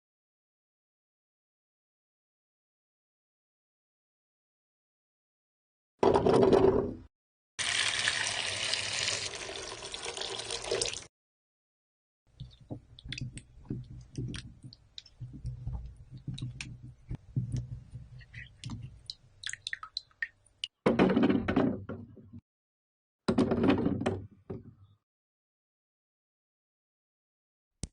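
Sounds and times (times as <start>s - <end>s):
water running from a tap: 7.6s - 11.1s
clicks and knocks of plums handled: 12.3s - 19.2s.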